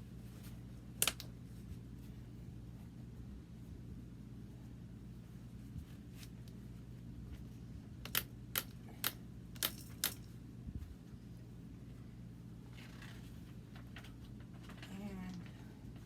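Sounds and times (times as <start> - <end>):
low steady hum: 0.0 - 16.0
sharp plastic clicks: 8.0 - 10.2.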